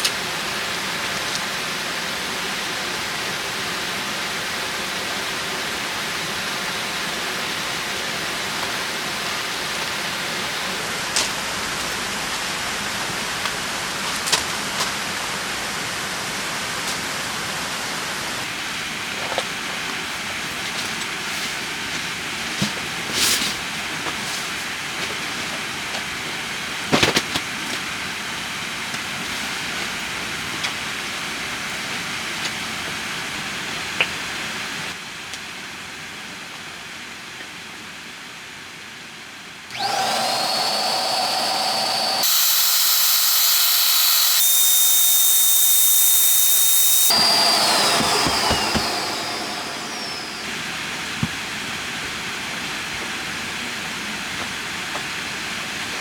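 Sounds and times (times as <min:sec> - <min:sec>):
small electric motor whining: 0:39.7 - 0:50.8.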